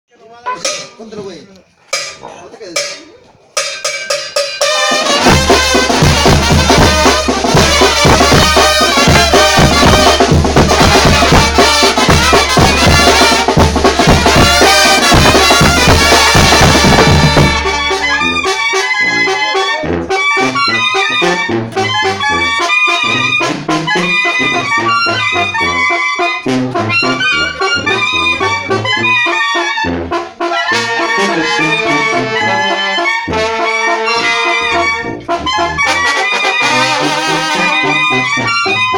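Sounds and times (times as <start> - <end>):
brass band playing: 3.6 - 38.9.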